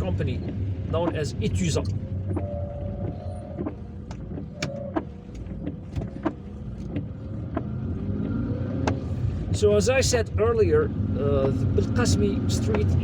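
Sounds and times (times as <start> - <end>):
raindrops tapping on car: 0.0 - 7.7
engine and road rumble: 0.0 - 13.0.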